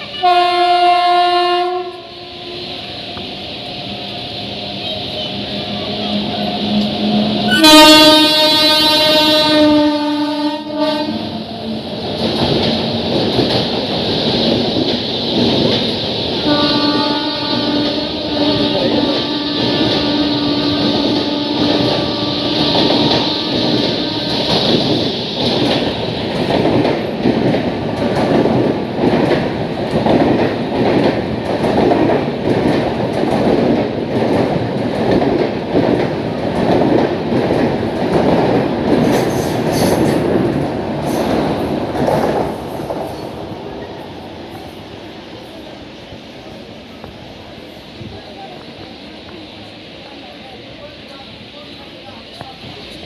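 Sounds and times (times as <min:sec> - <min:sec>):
locomotive horn tones: 0:00.0 - 0:02.7, 0:05.8 - 0:11.4, 0:16.4 - 0:24.7
train wheels clattering: 0:11.8 - 0:44.9.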